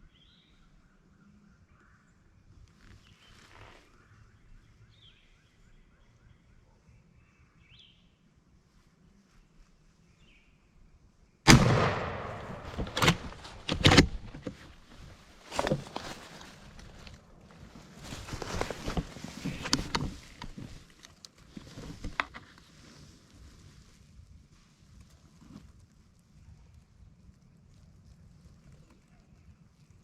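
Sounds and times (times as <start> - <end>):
songbird chirps: 0.0 - 11.4
rustling: 2.6 - 4.1, 11.5 - 30.0
loud shotgun blast: 11.5 - 14.2.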